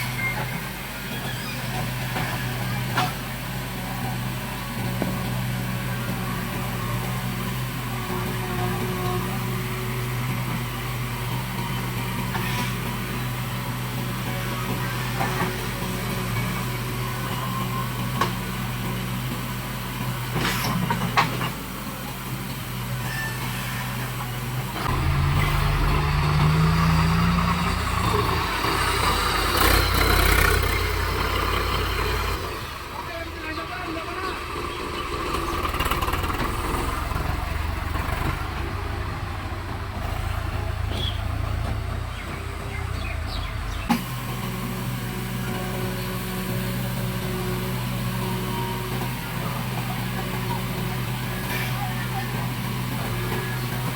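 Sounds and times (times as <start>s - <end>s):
diesel machinery engine running: 0.0s - 53.9s
sharp metallic knocks: 24.9s - 29.3s.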